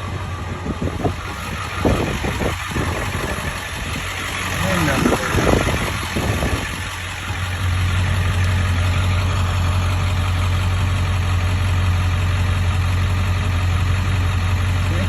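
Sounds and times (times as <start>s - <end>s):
pickup truck engine running: 0.0s - 15.0s.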